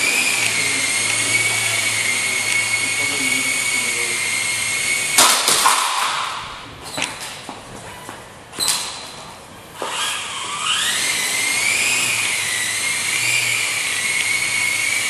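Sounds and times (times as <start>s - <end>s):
toy helicopter motor whine: 0.0s - 6.4s, 9.8s - 15.0s.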